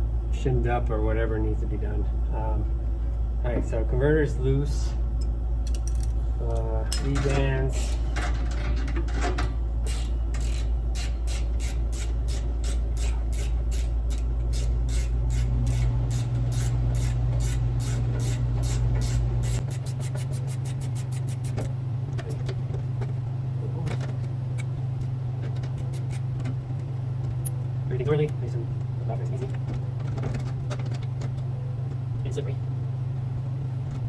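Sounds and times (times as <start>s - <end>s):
steady low hum: 0.0s - 34.0s
ratchet wrench clicking: 6.9s - 8.3s, 9.8s - 21.7s, 25.8s - 26.2s.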